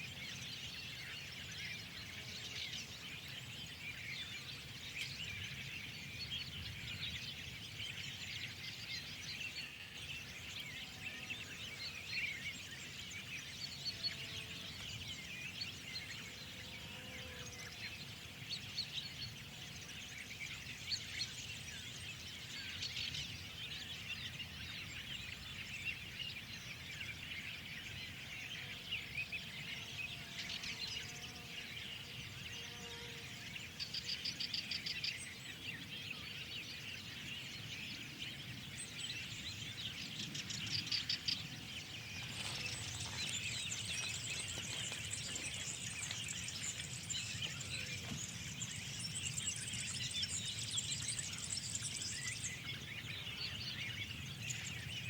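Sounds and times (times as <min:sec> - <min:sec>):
songbirds chirping: 0:00.0 - 0:55.0.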